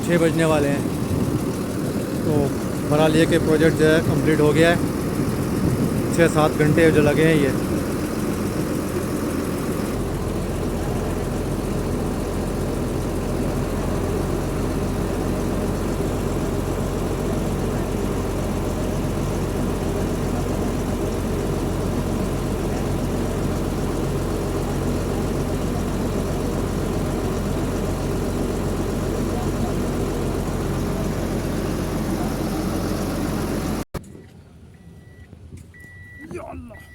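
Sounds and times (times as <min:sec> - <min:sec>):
truck diesel engine idling: 0:00.0 - 0:33.9.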